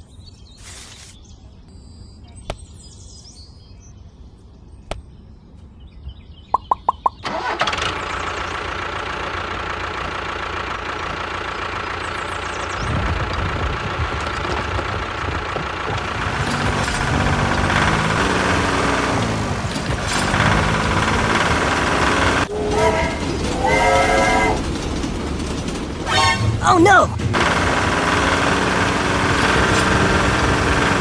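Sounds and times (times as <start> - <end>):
starter clicks: 6.6 - 7.8
engine running: 6.6 - 31.0.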